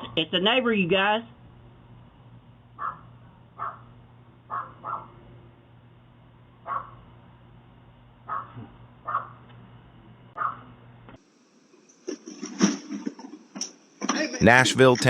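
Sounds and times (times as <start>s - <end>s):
animal calls: 2.8s - 3.9s, 4.5s - 5.2s, 6.7s - 7.0s, 8.3s - 9.4s, 10.4s - 10.8s.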